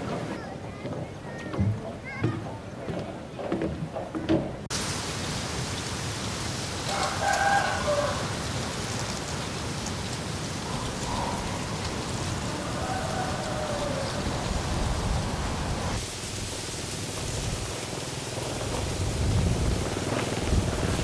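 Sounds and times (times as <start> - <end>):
steady rain falling: 4.7 - 21.0
rooster crowing: 6.9 - 8.4, 12.5 - 14.7.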